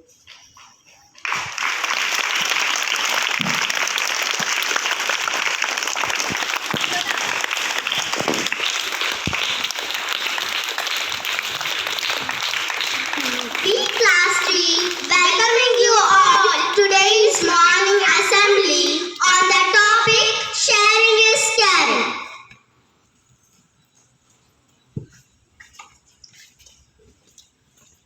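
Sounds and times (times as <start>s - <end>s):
audience clapping: 1.2s - 19.8s.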